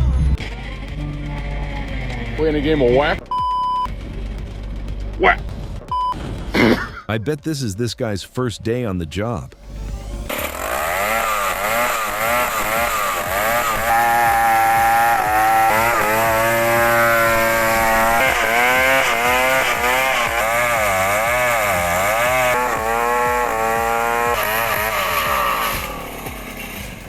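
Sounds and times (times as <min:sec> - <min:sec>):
chainsaw engine revving: 0:00.1 - 0:03.3, 0:09.6 - 0:27.0.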